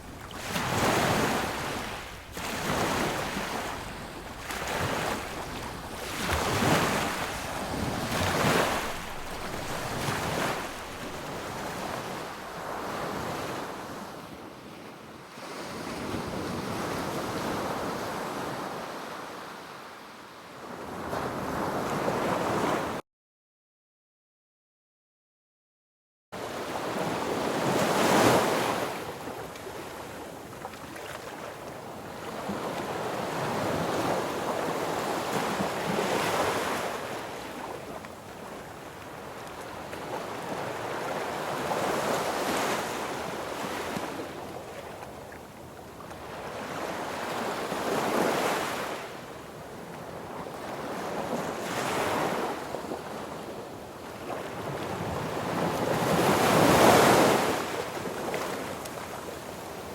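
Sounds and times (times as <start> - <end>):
wind on microphone: 0.0 - 12.8
sea waves breaking on beach: 0.0 - 14.1, 26.6 - 49.2, 54.2 - 59.9.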